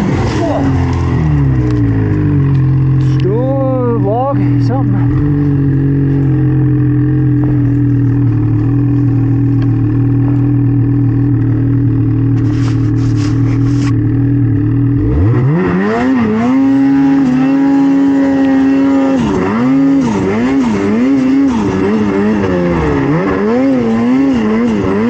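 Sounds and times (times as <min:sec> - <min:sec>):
snowmobile engine running: 0:00.0 - 0:25.0
scraping rustles: 0:12.3 - 0:14.0.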